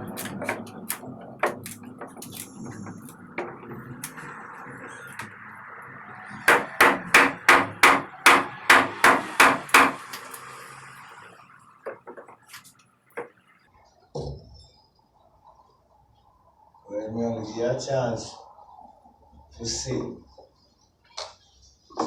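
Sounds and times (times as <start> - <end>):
hammer striking wooden boards: 0.2 - 2.2, 6.4 - 10.3.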